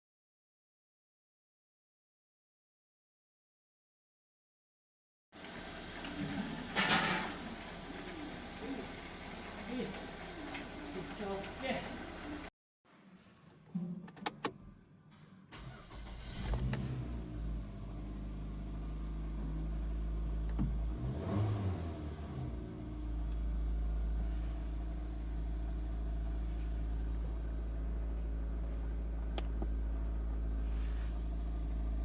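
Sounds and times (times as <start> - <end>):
car engine starting and idling: 5.4 - 12.5, 15.5 - 32.0.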